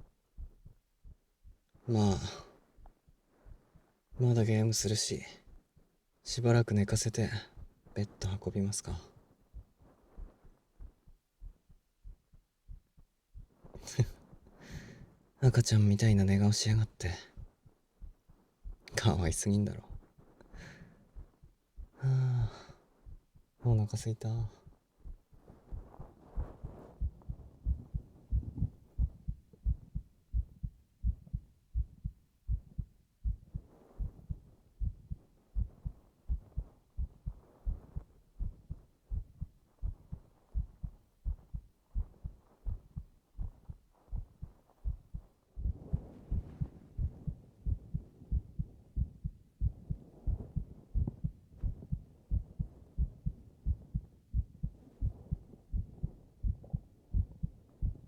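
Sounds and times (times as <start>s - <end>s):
heartbeat thumps: 0.0s - 4.3s, 7.3s - 23.6s, 24.4s - 58.0s.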